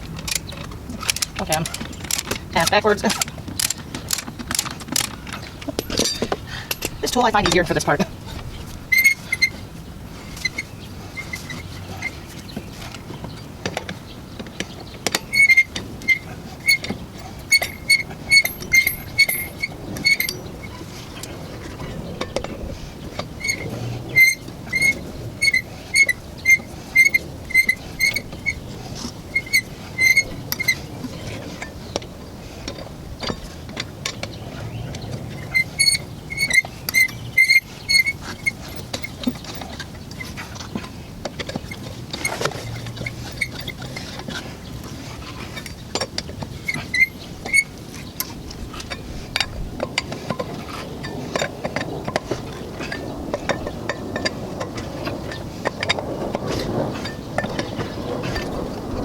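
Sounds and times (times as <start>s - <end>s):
ratchet wrench clicking: 0.2s - 7.6s.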